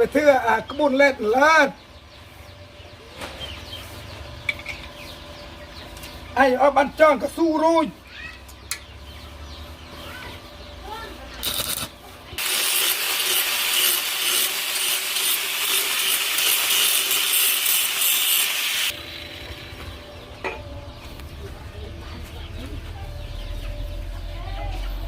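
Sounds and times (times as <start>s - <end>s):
hand tool rasping on metal: 12.4s - 18.9s.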